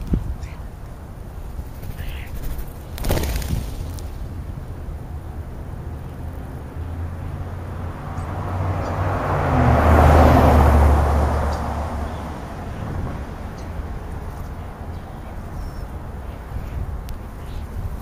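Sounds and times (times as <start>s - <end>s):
car driving past: 5.8s - 13.5s.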